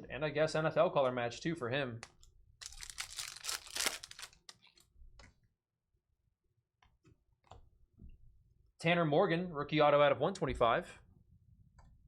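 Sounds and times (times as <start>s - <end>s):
wrapper tearing and crinkling: 2.6s - 4.6s.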